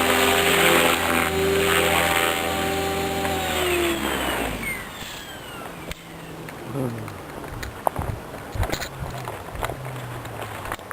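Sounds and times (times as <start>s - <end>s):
rc helicopter motor whining: 0.0s - 7.1s.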